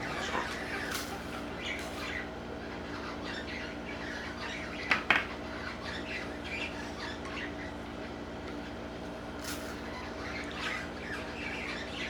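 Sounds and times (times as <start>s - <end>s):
birds chirping and squawking: 0.0s - 4.9s, 9.7s - 12.0s.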